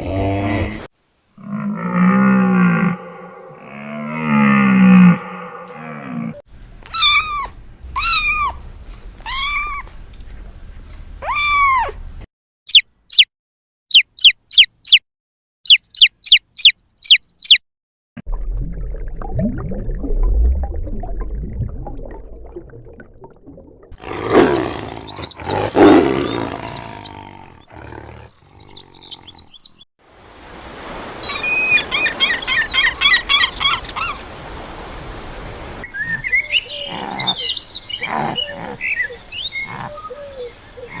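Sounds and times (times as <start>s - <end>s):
coarse animal calls: 0.0s - 6.4s, 24.0s - 29.6s
high bird chirps: 12.7s - 13.3s, 13.9s - 15.0s, 15.6s - 17.6s.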